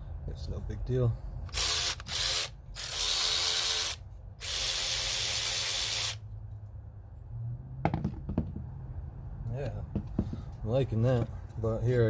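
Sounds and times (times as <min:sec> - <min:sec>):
electric ratchet motor whirring: 0:01.5 - 0:06.2.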